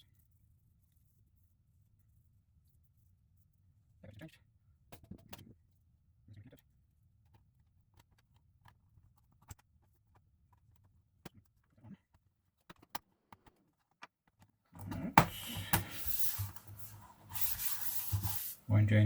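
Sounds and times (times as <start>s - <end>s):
rubbing scraping sound: 14.8s - 19.0s.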